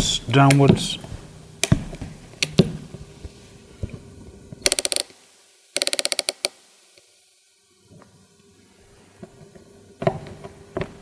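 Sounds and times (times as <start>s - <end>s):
crimping tool clicking: 5.8s - 6.6s.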